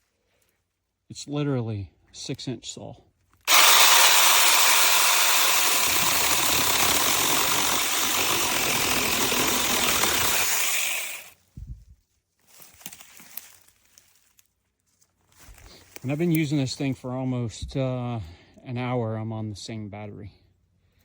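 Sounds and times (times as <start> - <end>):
mini chainsaw cutting wood: 3.5 - 11.4.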